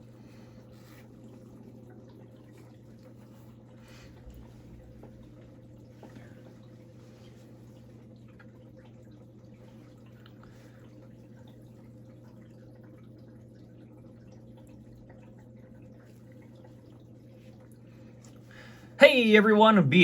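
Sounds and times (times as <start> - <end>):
low hum: 0.0 - 9.4.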